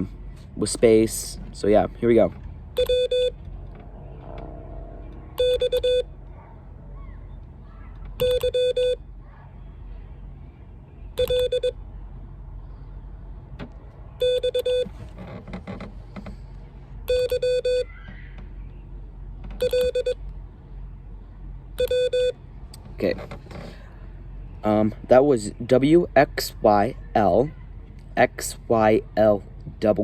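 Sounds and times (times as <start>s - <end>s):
morse code beeps: 2.8s - 3.4s, 5.4s - 6.1s, 8.2s - 9.0s, 11.2s - 11.8s, 14.2s - 14.9s, 17.1s - 17.9s, 19.6s - 20.2s, 21.8s - 22.4s.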